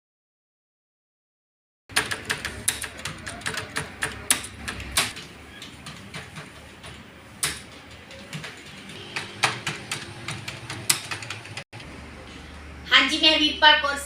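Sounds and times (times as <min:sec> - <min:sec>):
computer keyboard typing: 0:01.9 - 0:11.8.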